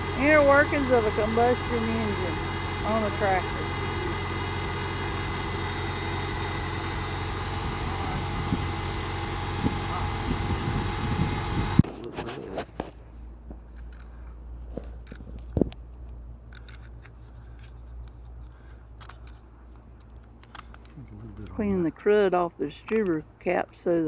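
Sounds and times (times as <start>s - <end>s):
tractor engine idling: 0.0s - 11.8s.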